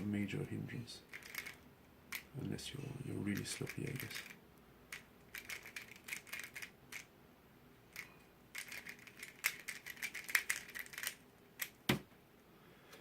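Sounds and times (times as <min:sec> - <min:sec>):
puzzle cube clicking: 0:01.1 - 0:02.3, 0:03.3 - 0:07.1, 0:07.9 - 0:12.0.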